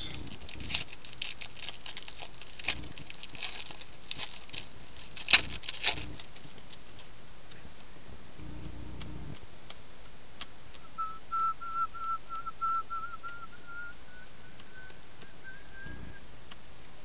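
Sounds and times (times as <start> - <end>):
person whistling short notes: 10.8 - 16.2.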